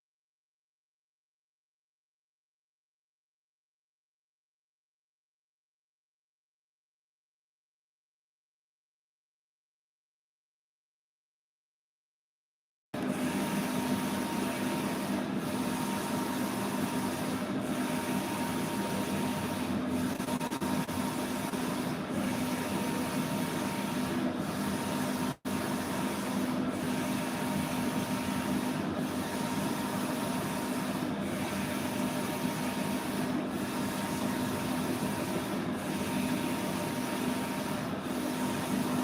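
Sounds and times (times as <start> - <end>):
printing machine running: 13.0 - 39.0.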